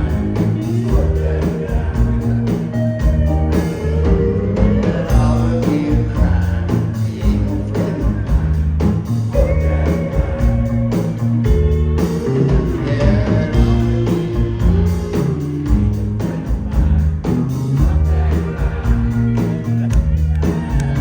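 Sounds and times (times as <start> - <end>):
electric guitar bending notes: 0.0 - 7.4
drums and bass beat: 0.0 - 21.0.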